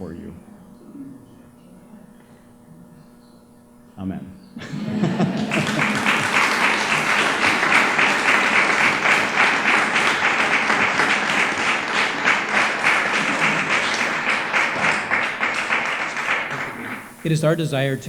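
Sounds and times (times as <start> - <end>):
audience applauding: 4.6 - 18.0.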